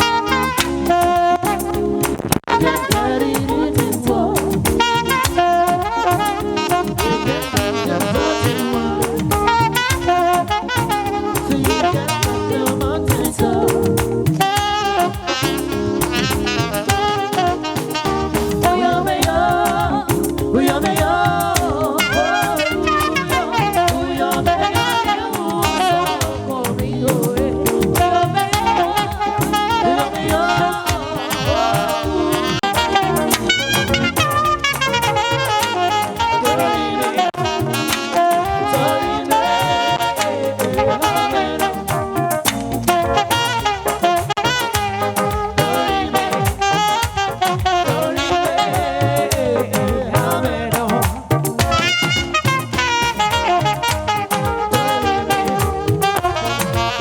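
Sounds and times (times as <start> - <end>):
saxophone band playing: 0.0 - 57.0.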